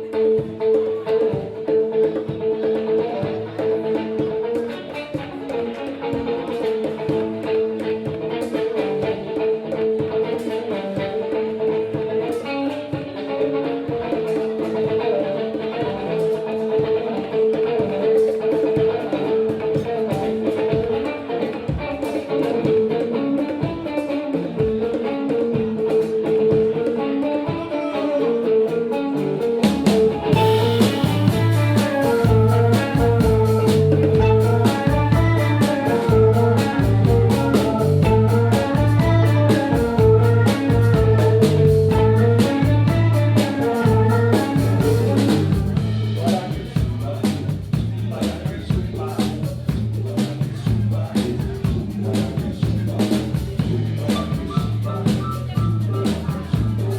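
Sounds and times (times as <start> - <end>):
guitar riff: 0.0 - 47.6, 53.6 - 56.9
bass guitar: 0.0 - 56.9
drum kit with cymbals: 28.7 - 56.9.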